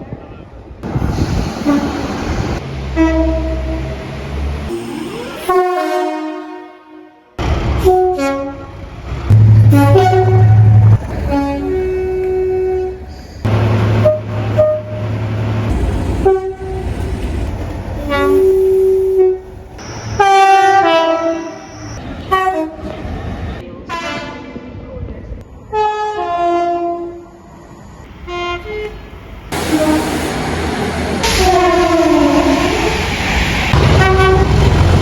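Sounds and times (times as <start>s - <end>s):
low rumble of train: 0.0s - 4.8s, 5.4s - 35.0s
train horn blasts: 3.0s - 3.9s, 4.7s - 13.2s, 13.9s - 15.1s, 25.7s - 27.2s, 29.5s - 30.2s, 31.2s - 32.7s, 33.8s - 34.9s.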